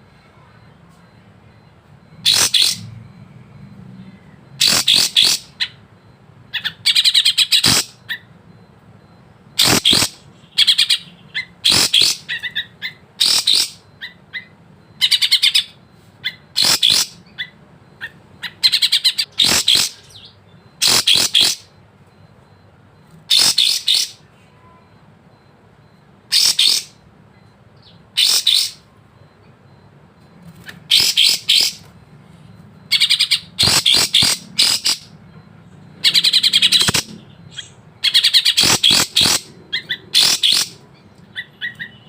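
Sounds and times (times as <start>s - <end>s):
songbird chirping: 0.1s - 8.7s.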